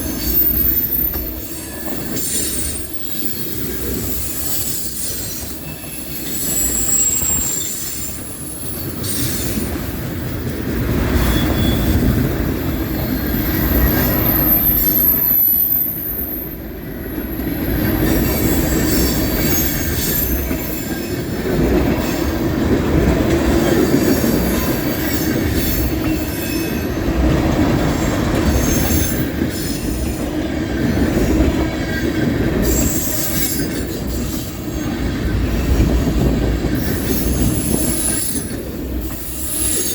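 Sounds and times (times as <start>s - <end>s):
steel wheels rumbling on rail: 0.0s - 39.9s
high-pitched wheel squeal: 4.8s - 9.5s, 11.2s - 12.1s.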